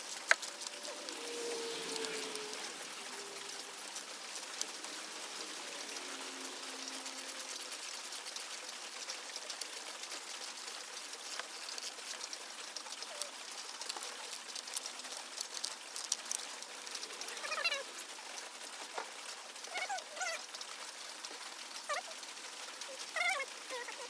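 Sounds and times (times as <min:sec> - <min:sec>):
background hiss: 0:00.0 - 0:08.6.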